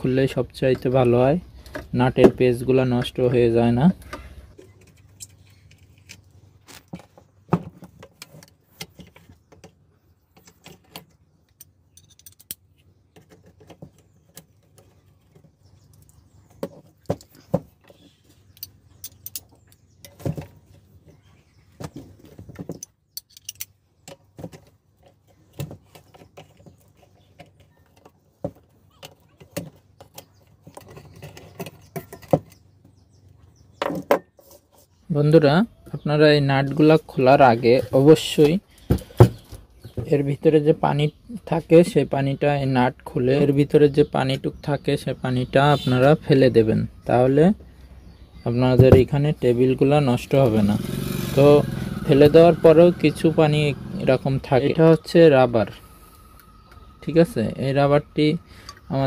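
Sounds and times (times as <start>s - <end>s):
socket wrench and tools clinking: 11.6s - 12.6s, 22.8s - 23.8s.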